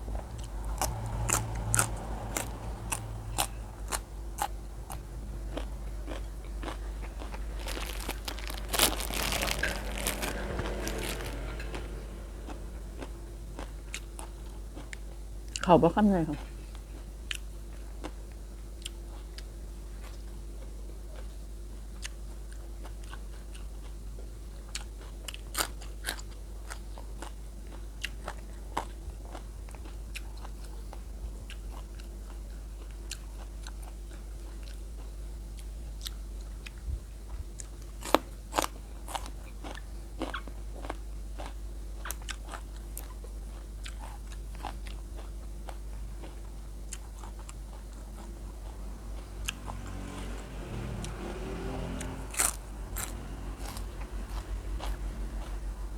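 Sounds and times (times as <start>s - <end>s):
steady low hum: 0.0s - 51.4s, 52.1s - 55.9s
chewing with crisp crunches: 0.2s - 55.9s.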